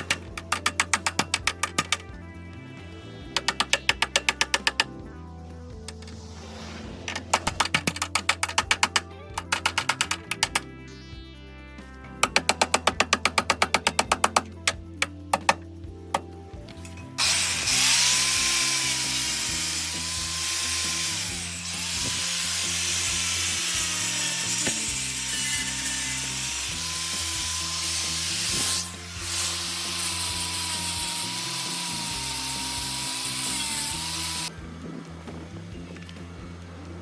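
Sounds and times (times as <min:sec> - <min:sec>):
background music: 0:00.0 - 0:37.0
power tool whining: 0:12.3 - 0:34.5.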